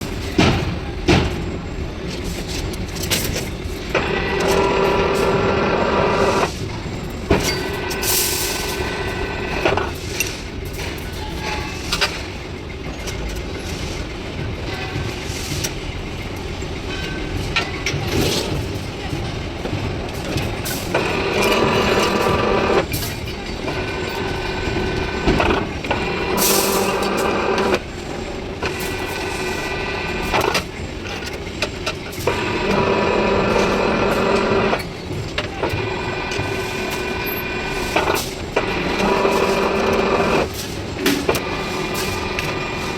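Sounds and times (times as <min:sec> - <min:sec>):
machine whining: 0:03.1 - 0:11.3, 0:20.4 - 0:42.9
machine humming: 0:03.6 - 0:09.9, 0:20.8 - 0:22.9, 0:23.6 - 0:40.6.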